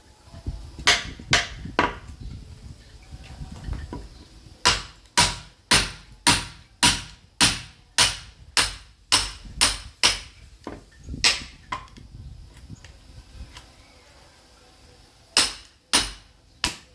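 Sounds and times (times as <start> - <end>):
sledgehammer striking chisel: 0.8 - 2.0, 4.6 - 11.9, 15.4 - 16.9.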